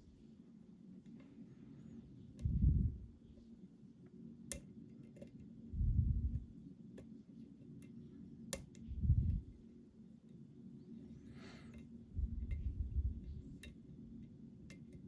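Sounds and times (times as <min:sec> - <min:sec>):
low muffled rumbles: 0:02.4 - 0:03.4, 0:05.7 - 0:06.5, 0:08.8 - 0:09.6, 0:12.0 - 0:13.7.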